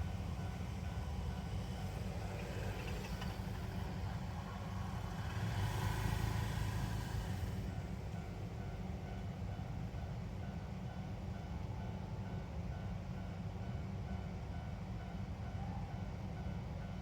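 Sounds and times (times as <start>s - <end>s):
vehicle passing close by: 2.0s - 8.1s.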